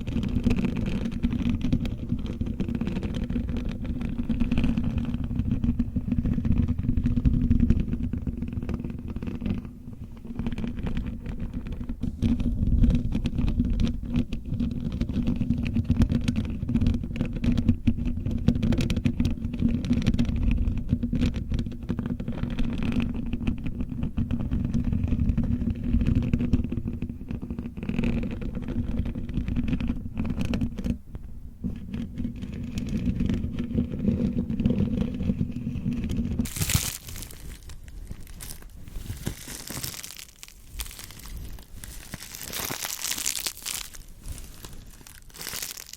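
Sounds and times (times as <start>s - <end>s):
crinkling plastic: 0.0s - 30.8s, 32.0s - 45.9s
fingernails scratching: 31.8s - 45.9s.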